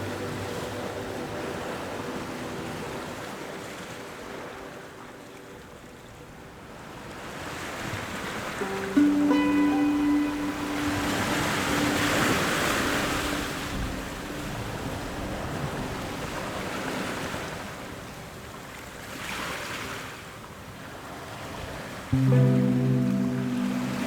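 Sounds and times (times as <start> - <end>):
sustained musical tone: 8.6 - 15.9, 22.2 - 24.0
sea waves washing: 8.6 - 17.4, 22.2 - 24.0.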